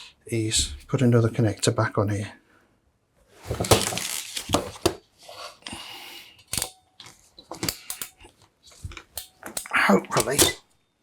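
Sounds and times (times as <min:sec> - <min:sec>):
hand tools rustling and scraping: 0:03.3 - 0:05.6.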